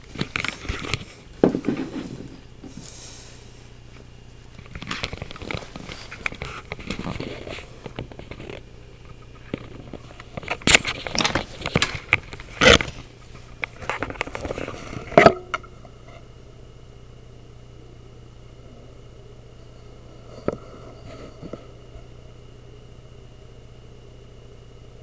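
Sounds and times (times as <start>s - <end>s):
crackling and scraping noises: 0.0s - 16.3s, 19.6s - 22.3s.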